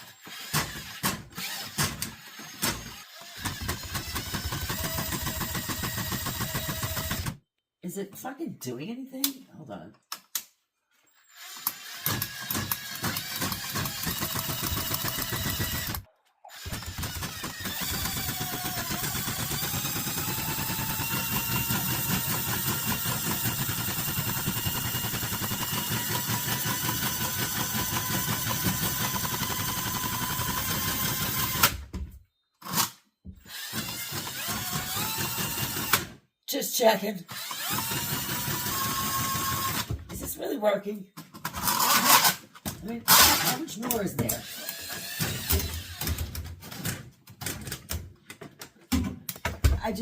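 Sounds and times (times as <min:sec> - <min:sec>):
drain auger motor spinning: 0:00.0 - 0:07.3, 0:11.3 - 0:31.8, 0:33.5 - 0:36.0, 0:37.4 - 0:40.0.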